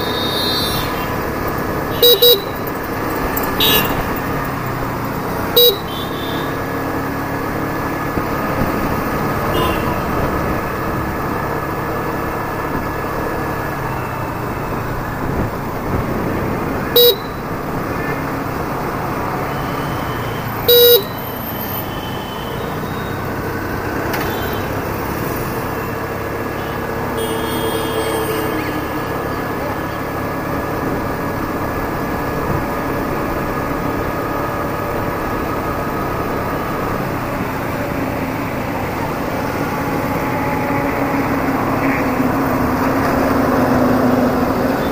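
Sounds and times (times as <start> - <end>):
horn beeps: 0.0 - 4.6, 5.4 - 6.9, 16.9 - 17.5, 19.4 - 30.3
scooter engine running: 0.0 - 44.9.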